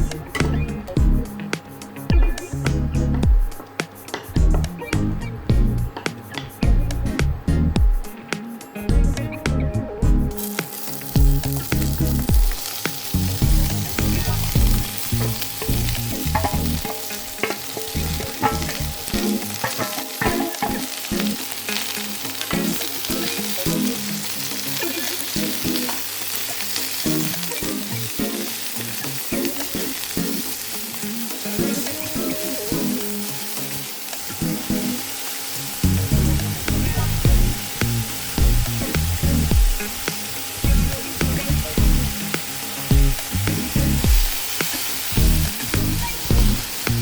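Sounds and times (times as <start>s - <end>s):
food sizzling in hot oil: 10.1s - 47.0s
utensil scraping pan: 10.4s - 23.6s.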